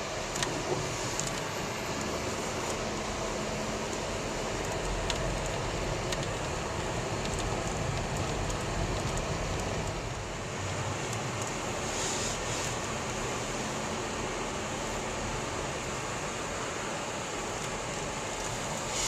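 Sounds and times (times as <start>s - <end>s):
car road noise and engine hum: 0.0s - 19.0s.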